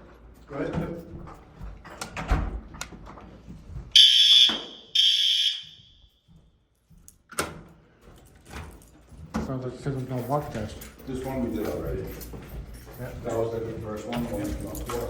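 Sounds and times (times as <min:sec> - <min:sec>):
fire alarm blasts: 0:04.0 - 0:06.3.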